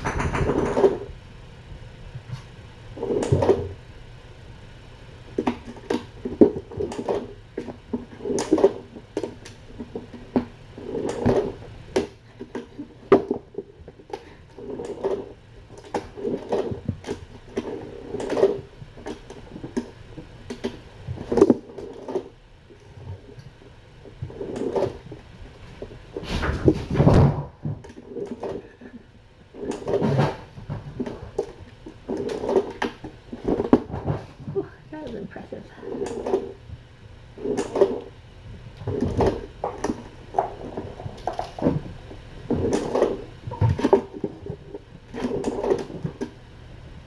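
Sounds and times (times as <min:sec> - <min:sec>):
cat thumping and scrabbling: 0:00.0 - 0:01.2, 0:26.2 - 0:28.8, 0:29.6 - 0:31.5, 0:32.2 - 0:34.6.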